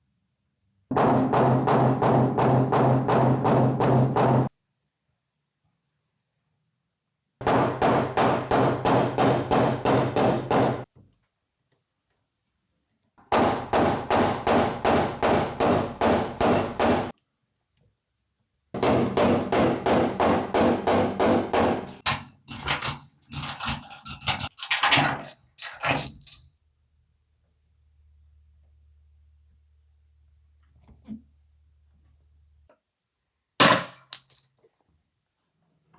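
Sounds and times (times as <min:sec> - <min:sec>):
hammer striking sheet metal: 0:33.6 - 0:34.5.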